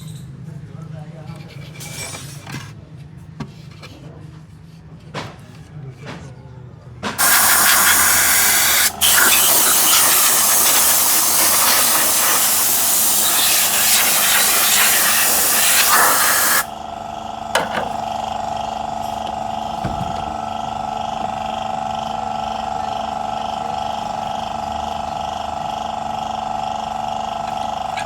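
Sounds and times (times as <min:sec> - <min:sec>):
compressed air gun hissing: 0:07.2 - 0:16.7.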